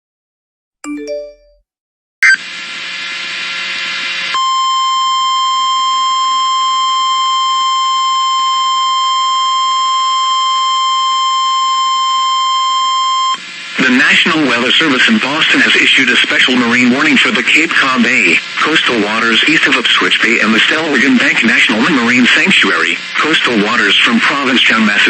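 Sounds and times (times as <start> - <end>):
steady high alert tone: 0.8 - 1.6
rising three-note chime: 0.9 - 1.6.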